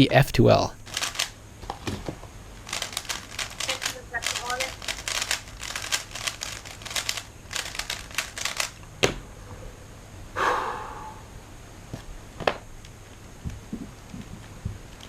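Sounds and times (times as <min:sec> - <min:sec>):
puzzle cube plastic clicking: 0:02.7 - 0:08.8.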